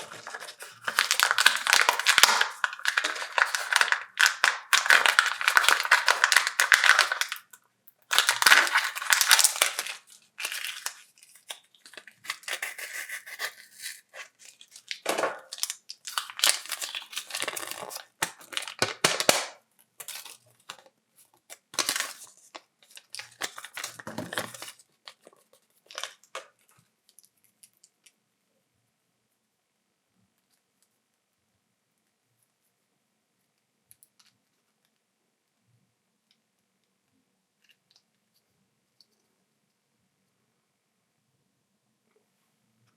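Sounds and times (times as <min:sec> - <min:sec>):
wrappers tearing and crinkling: 0:00.0 - 0:07.5, 0:08.1 - 0:20.8, 0:21.6 - 0:26.5.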